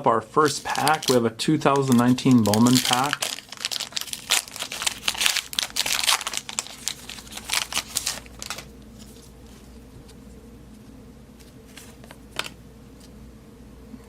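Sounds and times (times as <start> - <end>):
wrapper tearing and crinkling: 0.4 - 9.3.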